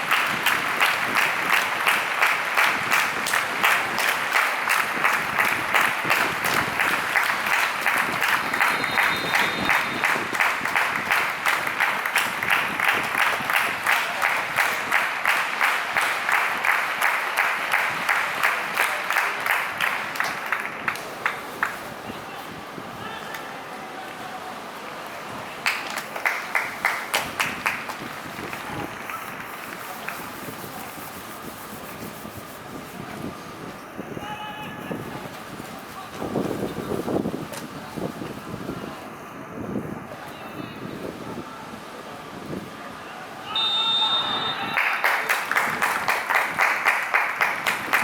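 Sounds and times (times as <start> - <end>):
crowd clapping in unison: 0.0 - 22.0, 25.6 - 32.4, 44.7 - 48.0.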